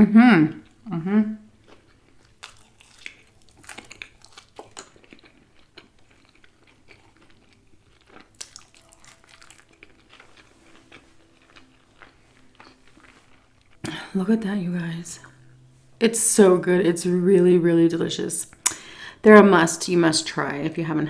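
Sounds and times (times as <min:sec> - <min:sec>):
person chewing crunchy food: 0:01.5 - 0:14.0.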